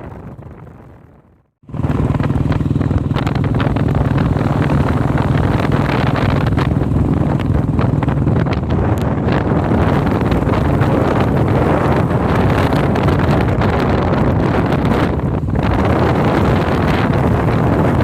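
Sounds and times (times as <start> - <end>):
vehicle engine droning: 0.0 - 18.0
wind on microphone: 0.0 - 18.0.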